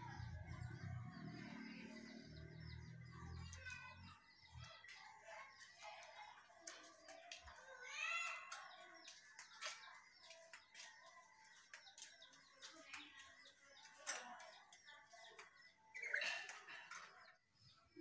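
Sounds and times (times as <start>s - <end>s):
faint clicks and taps: 5.8s - 15.8s.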